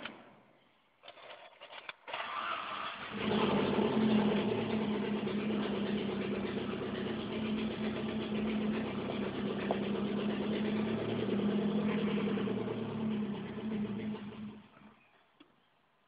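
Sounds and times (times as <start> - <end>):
car engine idling: 3.0 - 15.0.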